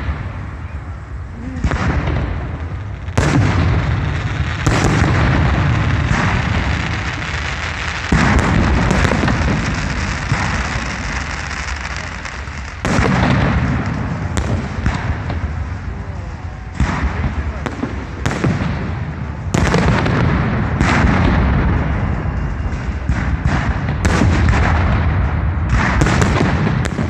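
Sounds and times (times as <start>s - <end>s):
fireworks booming: 0.0s - 27.0s.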